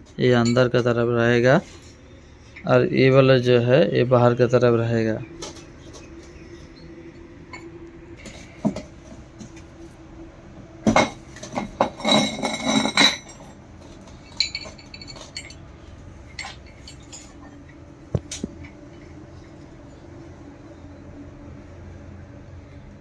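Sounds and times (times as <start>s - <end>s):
metal parts clinking and knocking: 10.8s - 15.7s, 16.3s - 18.5s.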